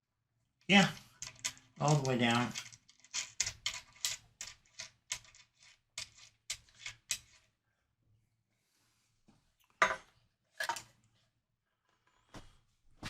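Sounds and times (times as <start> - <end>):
small metal parts clicking: 1.0 - 7.4.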